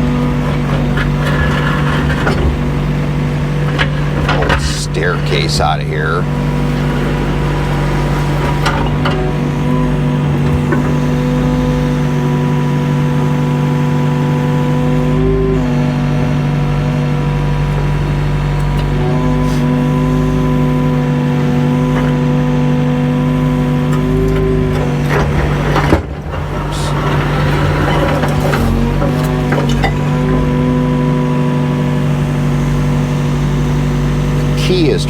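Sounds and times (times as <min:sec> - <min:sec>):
excavator diesel engine running: 0:00.0 - 0:35.0
hydraulic whine: 0:00.0 - 0:35.0.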